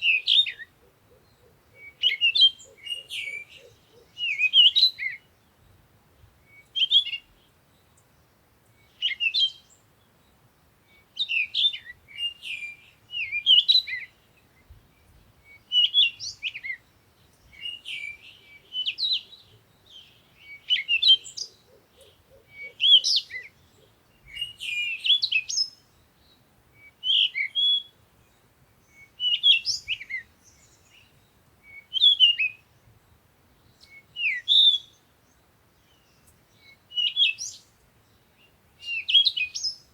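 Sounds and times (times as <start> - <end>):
songbird chirping: 0.0 - 39.9.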